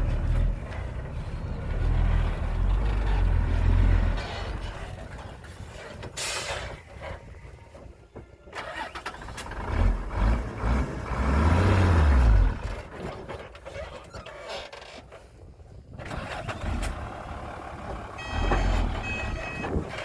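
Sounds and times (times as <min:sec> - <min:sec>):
heavy vehicle engine revving: 0:00.0 - 0:05.2, 0:08.7 - 0:13.0.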